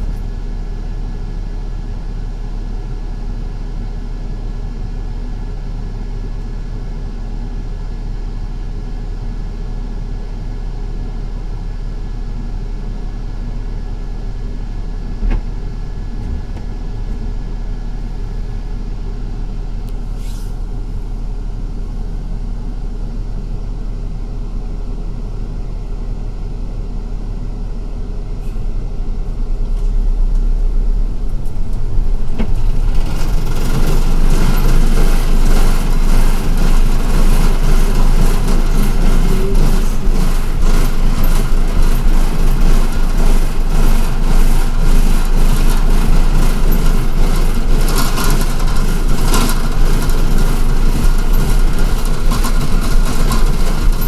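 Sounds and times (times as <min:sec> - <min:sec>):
bus engine and road rumble: 0:00.0 - 0:09.0, 0:10.7 - 0:54.0
rattle and clatter: 0:27.5 - 0:54.0.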